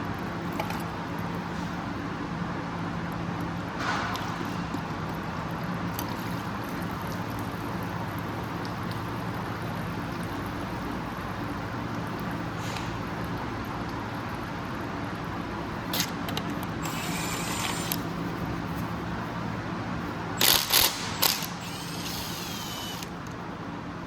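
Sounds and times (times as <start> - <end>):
steady low hum: 9.2 - 24.0
ratchet clicking: 16.8 - 18.0, 20.4 - 23.2.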